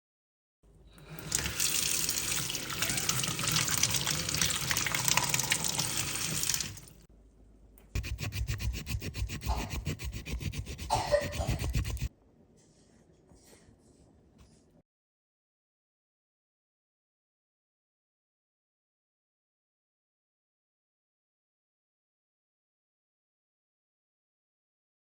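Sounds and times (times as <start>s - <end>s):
water running: 0.9s - 7.1s.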